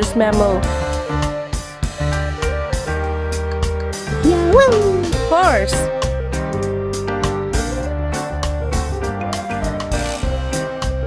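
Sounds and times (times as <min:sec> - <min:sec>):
steady beat: 0:04.2 - 0:05.9.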